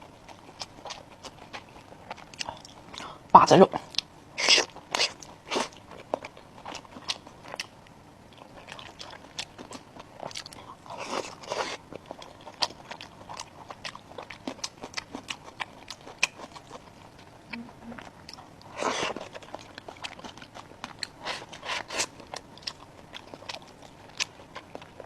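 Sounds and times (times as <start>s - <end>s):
person chewing crunchy food: 0.0s - 3.2s, 3.8s - 25.0s
wet mouth clicks: 17.5s - 18.0s.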